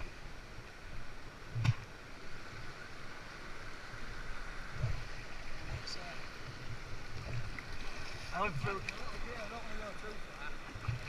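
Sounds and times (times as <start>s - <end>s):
water splashing around kayak: 0.0s - 11.0s.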